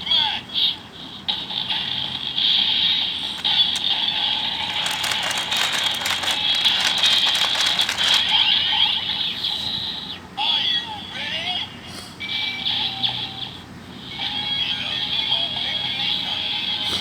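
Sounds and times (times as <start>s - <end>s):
rapid ratcheting clicks: 3.3s - 8.4s.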